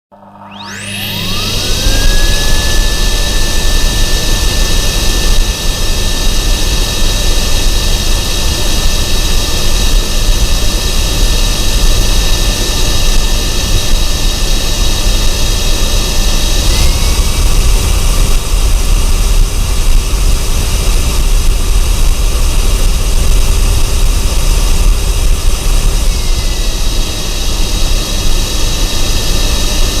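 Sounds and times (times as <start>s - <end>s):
vacuum cleaner motor whine: 0.1s - 30.0s.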